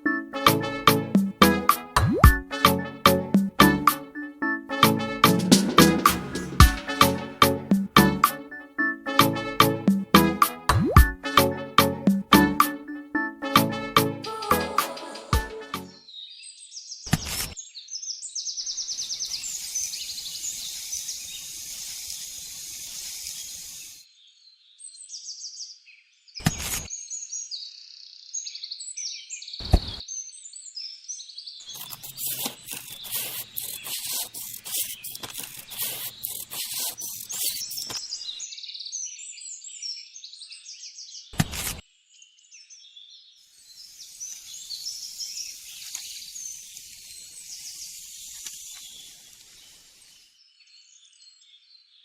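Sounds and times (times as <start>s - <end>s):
harsh rasping noise: 5.2s - 8.4s, 31.7s - 38.0s
small birds chirping: 16.8s - 24.0s, 26.5s - 41.4s, 42.2s - 52.0s.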